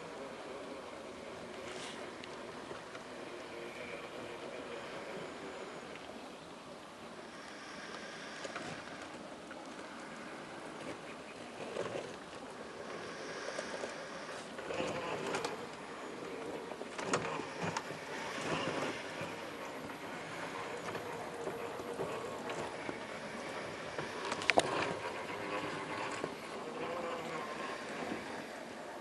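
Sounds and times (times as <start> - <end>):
electric motor whining: 11.6 - 28.9.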